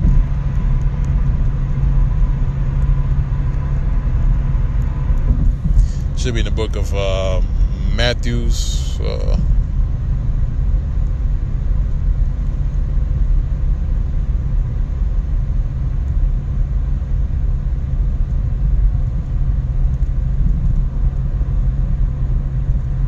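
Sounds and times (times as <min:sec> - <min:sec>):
faint hum: 0:00.0 - 0:12.0
steady low rumble: 0:00.0 - 0:23.0.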